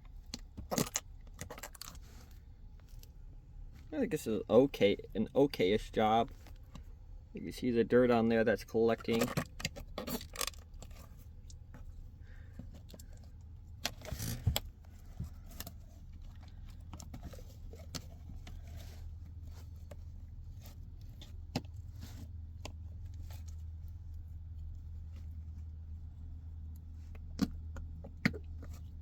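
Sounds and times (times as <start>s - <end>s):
handling noise: 8.4s - 29.0s.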